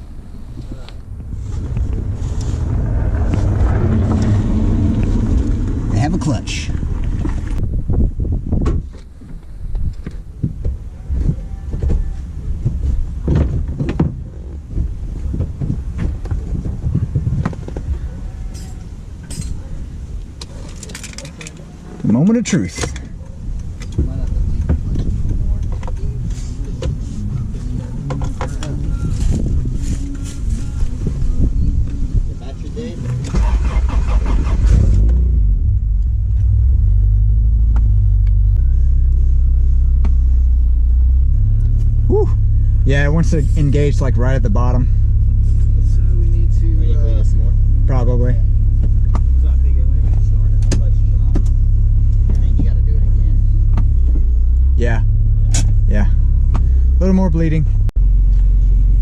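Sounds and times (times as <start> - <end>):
steady low rumble: 0.0 - 21.0, 22.9 - 59.0
car engine idling: 0.0 - 59.0
knocks and clunks on a car: 8.5 - 17.9, 23.8 - 27.0, 48.8 - 49.4, 50.0 - 52.9, 53.6 - 54.3, 56.4 - 56.8.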